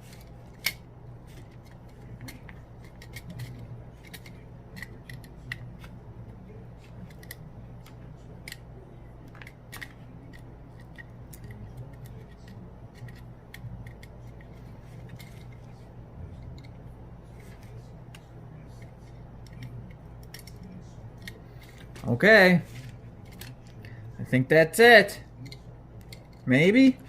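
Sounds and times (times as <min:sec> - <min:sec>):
hand tools clicking and scraping: 0:00.0 - 0:06.0, 0:09.3 - 0:23.9
steady low hum: 0:00.0 - 0:27.0.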